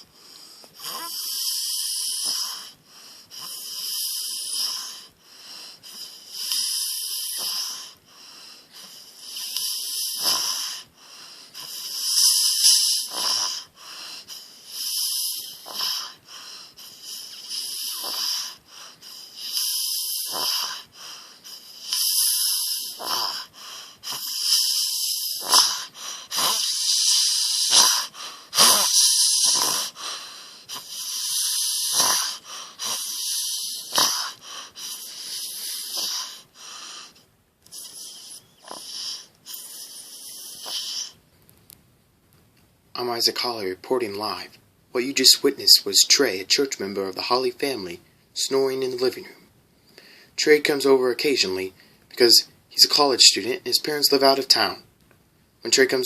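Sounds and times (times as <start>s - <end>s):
man snoring heavily: 0.0s - 41.2s.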